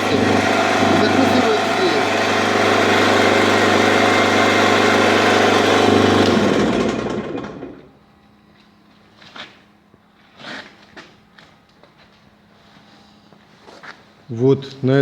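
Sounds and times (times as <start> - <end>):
brick press motor running: 0.0 - 8.0.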